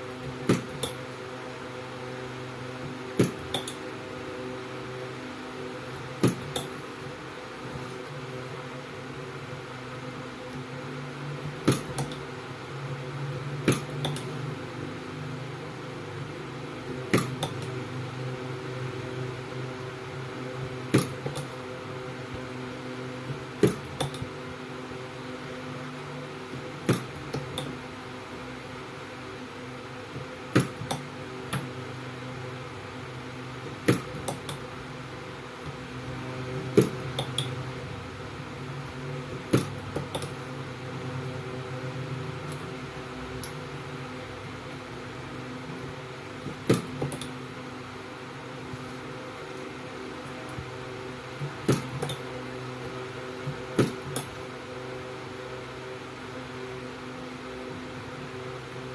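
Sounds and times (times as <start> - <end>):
welder electrical hum: 0.0 - 58.9
spot welder snapping: 11.6 - 12.2.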